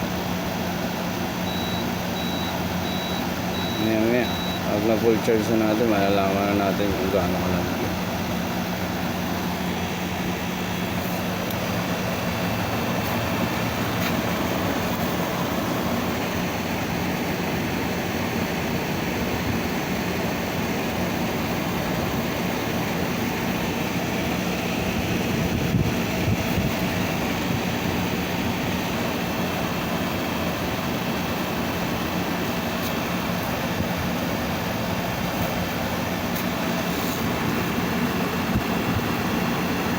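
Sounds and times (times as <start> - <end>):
air conditioner humming: 0.0 - 17.7
fan whooshing: 21.1 - 29.2, 30.6 - 39.9.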